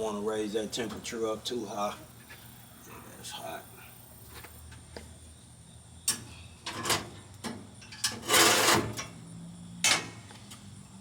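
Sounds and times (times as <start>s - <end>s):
metal scraping: 8.0s - 9.0s.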